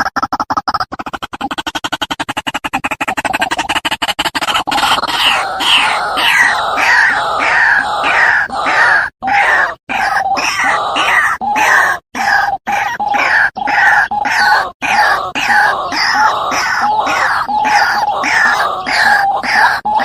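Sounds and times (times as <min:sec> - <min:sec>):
waterhen harsh croaking call: 0:04.4 - 0:20.0.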